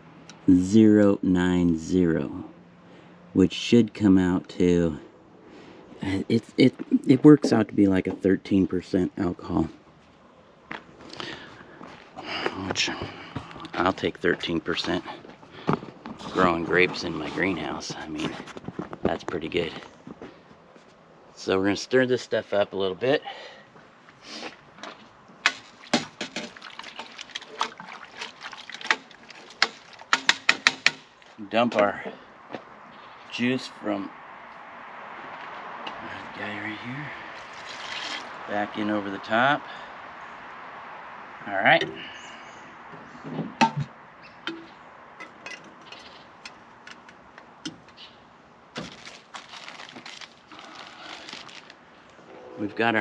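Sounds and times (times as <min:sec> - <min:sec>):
liquid swishing: 0:25.4 - 0:30.2, 0:37.4 - 0:38.4
objects clicking and knocking: 0:25.4 - 0:31.4, 0:44.5 - 0:48.0
rustling: 0:37.4 - 0:38.4, 0:48.7 - 0:53.0.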